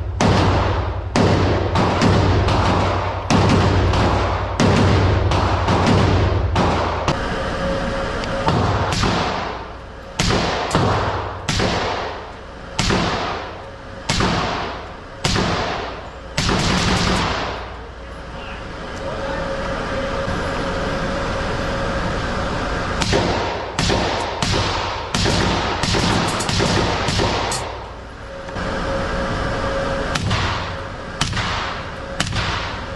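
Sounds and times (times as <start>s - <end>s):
gunshots with ringing echo: 0.2s - 7.0s, 8.5s - 12.2s, 12.8s - 17.6s, 23.0s - 27.8s.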